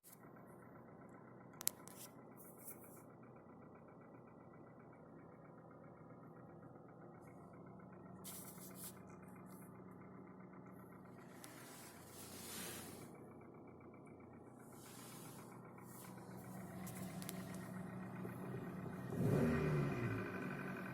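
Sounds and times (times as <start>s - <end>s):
engine idling with rapid knocking: 0.2s - 20.9s.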